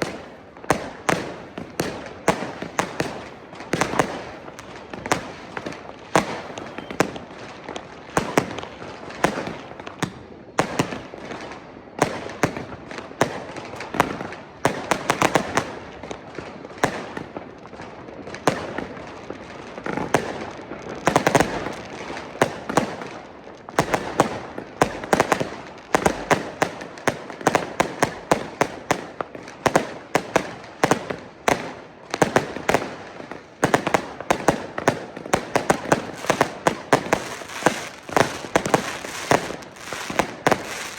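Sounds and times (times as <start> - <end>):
fireworks banging: 0.0 - 11.1, 29.7 - 40.9
distant fireworks crackling: 0.0 - 40.9.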